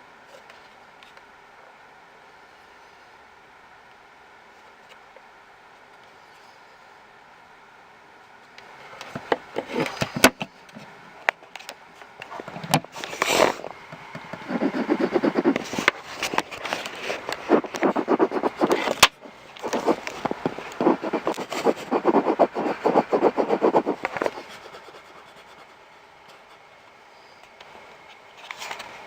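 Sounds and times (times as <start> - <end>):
fast rhythmic whooshing heartbeat: 14.4 - 15.9, 17.4 - 25.7
probe crackling and scraping: 14.4 - 24.5.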